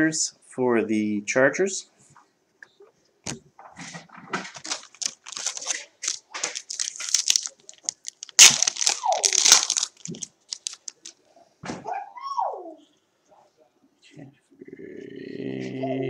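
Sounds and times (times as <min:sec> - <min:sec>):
foil wrapper crinkling: 0:04.5 - 0:11.2.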